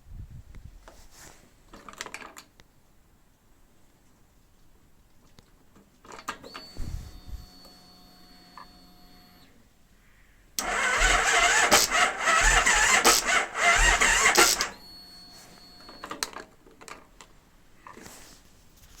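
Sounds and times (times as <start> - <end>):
sharp clicks: 10.6 - 14.8
starter cranking engine slowly: 10.6 - 14.8.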